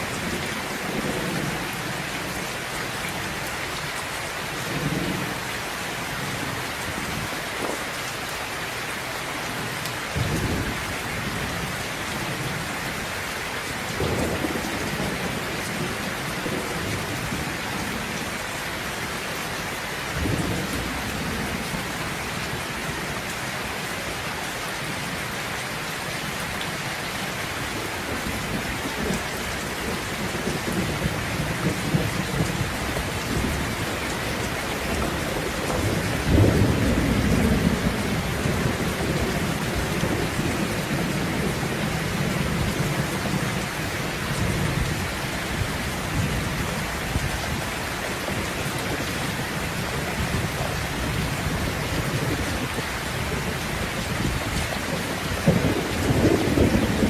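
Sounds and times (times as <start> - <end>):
steady rain: 0.0 - 57.0
rolling thunder: 13.9 - 18.2, 29.8 - 43.7, 50.1 - 57.0.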